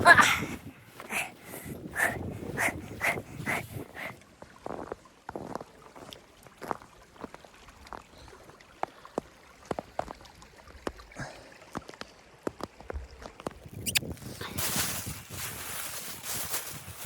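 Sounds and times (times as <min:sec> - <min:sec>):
short rustle: 0:13.9 - 0:17.0.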